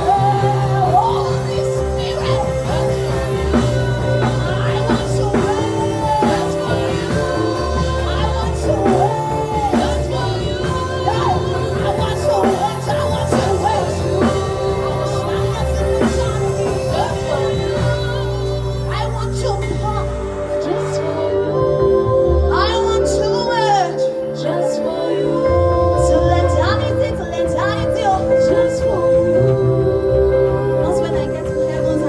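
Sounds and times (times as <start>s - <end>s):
live worship music: 0.0s - 32.0s
person singing: 0.0s - 32.0s.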